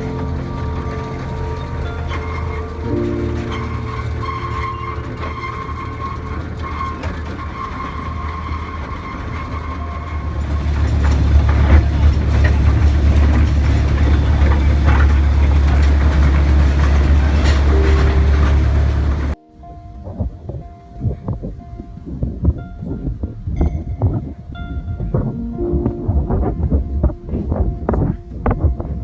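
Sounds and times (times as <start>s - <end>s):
loud low rumble: 0.0s - 7.5s, 9.8s - 29.0s.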